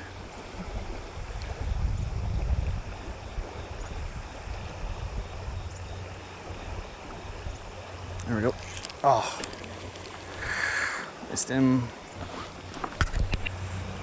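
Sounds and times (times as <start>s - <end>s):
wind buffeting microphone: 0.0s - 8.9s
river water flowing: 0.0s - 14.0s.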